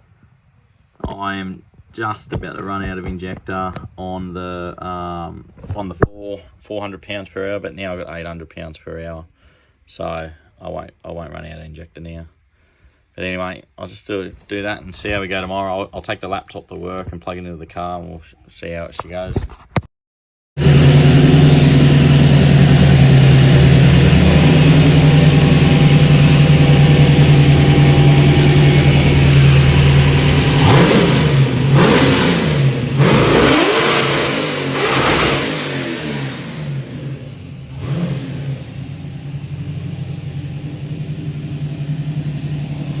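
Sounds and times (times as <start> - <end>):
car engine idling and revving: 20.6 - 43.0.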